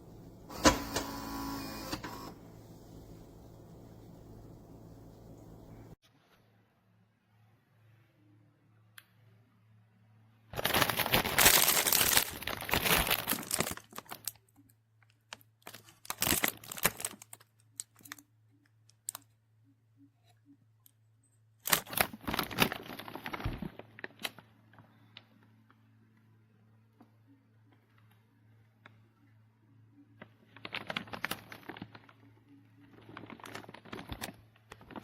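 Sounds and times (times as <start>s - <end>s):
crinkling and tearing: 10.5s - 19.3s, 21.6s - 25.2s, 30.2s - 35.0s.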